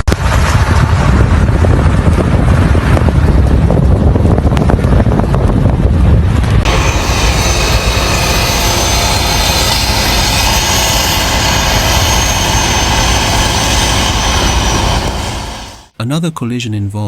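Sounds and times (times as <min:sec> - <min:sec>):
loud machine engine hum: 0:06.2 - 0:15.9.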